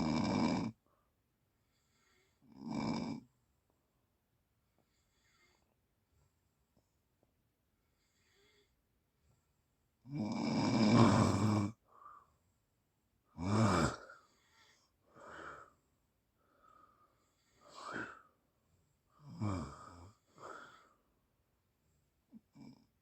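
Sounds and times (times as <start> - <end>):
person snoring: 0.0 - 0.8, 2.1 - 3.2, 10.1 - 11.8, 13.4 - 15.7, 17.4 - 18.3, 19.2 - 20.9
faint breaths: 0.8 - 2.6, 4.6 - 10.0, 11.7 - 13.3, 13.9 - 23.0.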